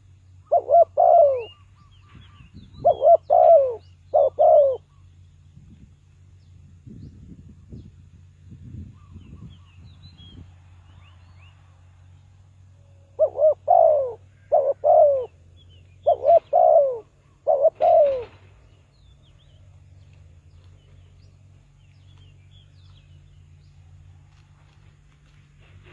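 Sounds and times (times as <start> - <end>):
dove cooing: 0.0 - 5.0, 13.0 - 18.8
small birds chirping: 0.0 - 25.9.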